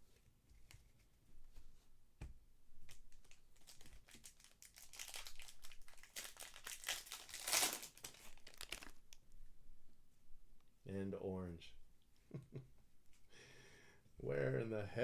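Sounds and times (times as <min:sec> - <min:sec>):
cards rustling: 0:02.9 - 0:09.1
foil wrappers crinkling and tearing: 0:02.9 - 0:09.2.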